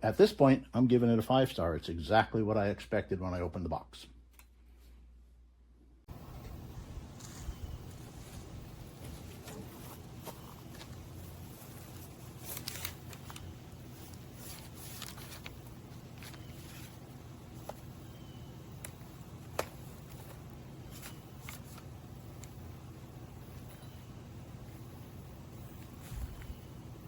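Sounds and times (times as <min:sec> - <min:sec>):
steady low hum: 0:00.0 - 0:27.0
handling clicks and rustles: 0:06.4 - 0:24.0.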